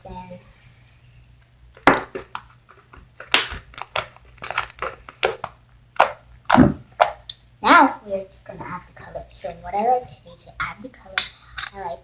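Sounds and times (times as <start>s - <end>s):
slime squelching and popping: 3.2s - 7.4s.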